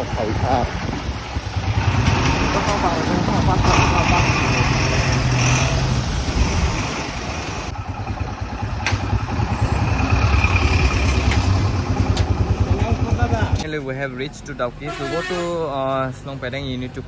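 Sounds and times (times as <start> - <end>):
motorcycle engine running: 0.0 - 5.4, 7.3 - 13.6
road and wind noise: 0.0 - 14.9.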